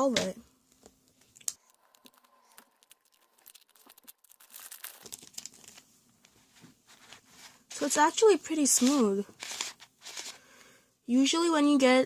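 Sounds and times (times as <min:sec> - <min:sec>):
puzzle cube clicking and rattling: 0:08.7 - 0:10.3.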